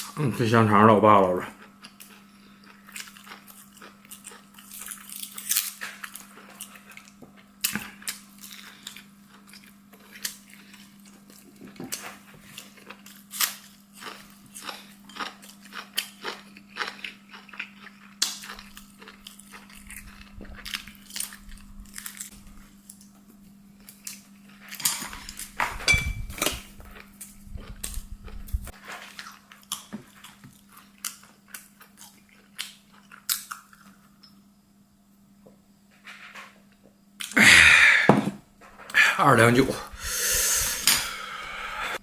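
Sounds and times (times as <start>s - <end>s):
steady low hum: 0.0s - 42.0s
person chewing crunchy food: 1.2s - 34.2s.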